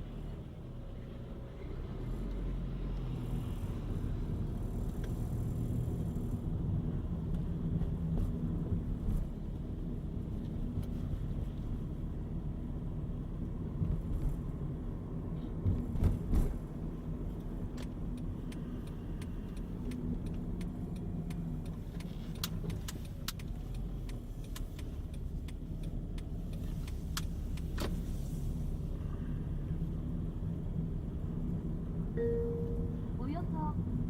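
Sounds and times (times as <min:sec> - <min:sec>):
car engine and road rumble: 0:00.0 - 0:34.0
thumps inside car: 0:15.6 - 0:16.8.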